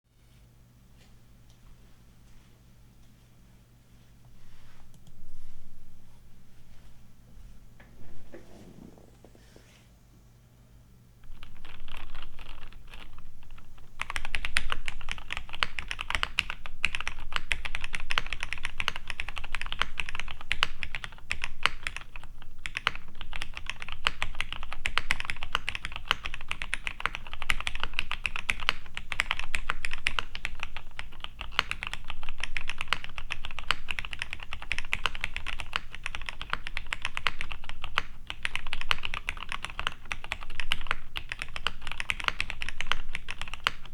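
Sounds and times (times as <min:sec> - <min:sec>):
typing on mechanical keyboard: 0:11.2 - 0:43.9.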